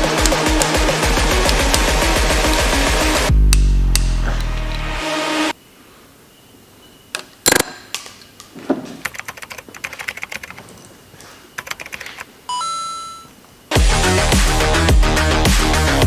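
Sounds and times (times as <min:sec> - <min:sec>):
short ringing tone: 0:12.5 - 0:13.3.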